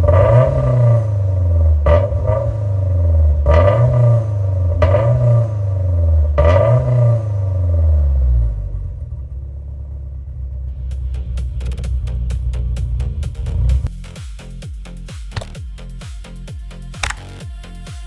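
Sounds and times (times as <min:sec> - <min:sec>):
car engine revving and idling: 0:00.0 - 0:13.9.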